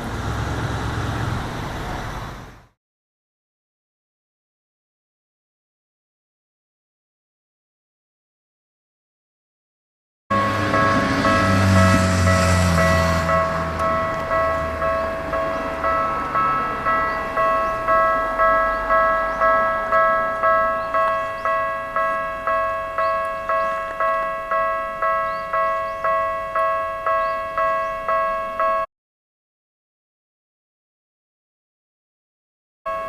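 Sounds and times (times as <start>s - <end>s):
level-crossing bell clanging: 10.3s - 28.9s.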